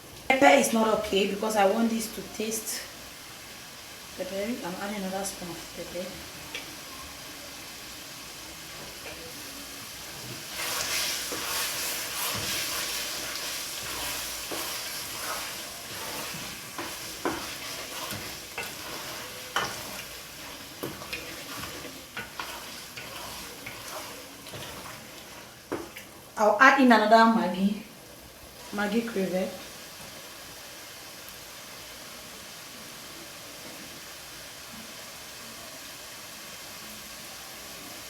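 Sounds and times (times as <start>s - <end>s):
sauce sizzling in hot oil: 0.0s - 38.0s.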